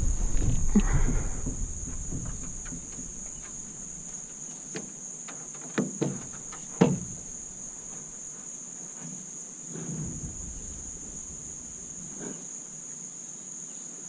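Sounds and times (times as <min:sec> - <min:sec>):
short knocks: 0:00.0 - 0:08.0
high-pitched insect chorus: 0:00.0 - 0:14.0.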